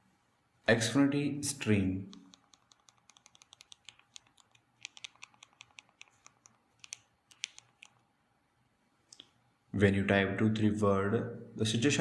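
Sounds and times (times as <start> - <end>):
keys clicking while typing: 2.1 - 8.0.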